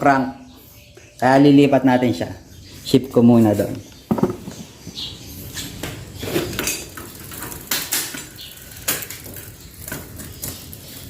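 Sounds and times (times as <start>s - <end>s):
bike gears clicking: 4.0s - 11.0s.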